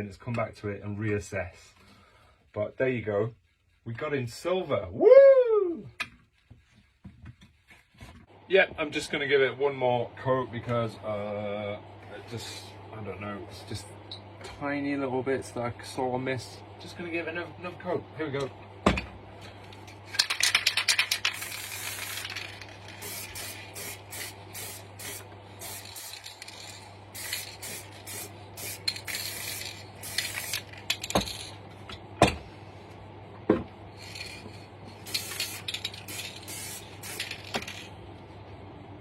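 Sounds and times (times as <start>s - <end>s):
steady low hum: 0.0s - 39.0s
spray paint can hissing: 20.2s - 31.5s, 34.0s - 37.9s.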